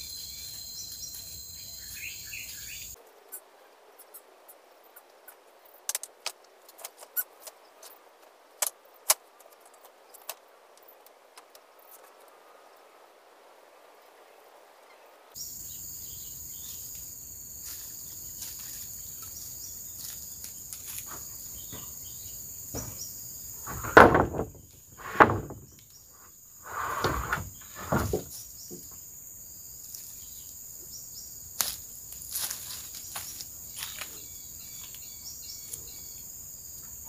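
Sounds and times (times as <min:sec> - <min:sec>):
insects buzzing: 0:00.0 - 0:03.4, 0:10.2 - 0:37.0
rustling knocks: 0:22.7 - 0:25.8, 0:26.6 - 0:29.0.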